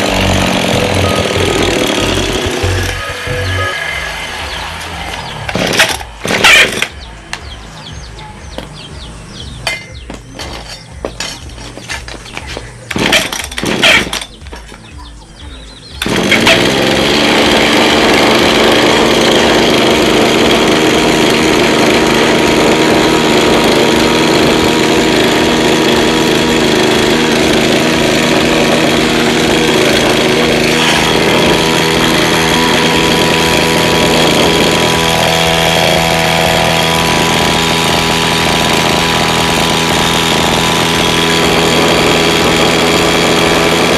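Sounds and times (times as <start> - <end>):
lawn mower engine starting: 0.0 - 7.4, 9.4 - 14.7, 15.9 - 43.9.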